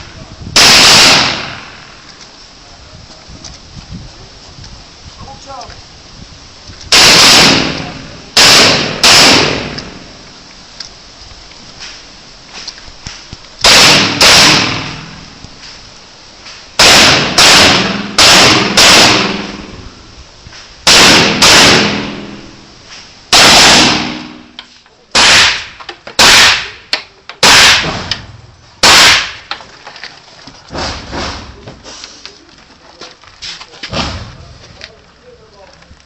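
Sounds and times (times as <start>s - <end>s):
rifle shots with echo: 0.6s - 2.0s, 6.9s - 10.1s, 13.6s - 15.2s, 16.8s - 19.7s, 20.9s - 22.5s, 23.3s - 24.5s, 25.1s - 26.8s, 27.4s - 29.5s.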